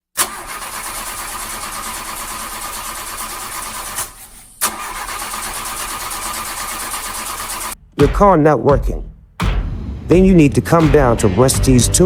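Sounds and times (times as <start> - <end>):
car engine running: 4.6 - 7.8.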